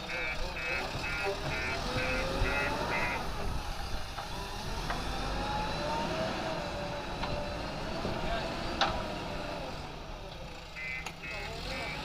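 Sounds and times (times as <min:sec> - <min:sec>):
reversing alarm beeping: 0:00.0 - 0:03.6, 0:10.7 - 0:12.0
diesel engine running with whine: 0:00.0 - 0:12.0.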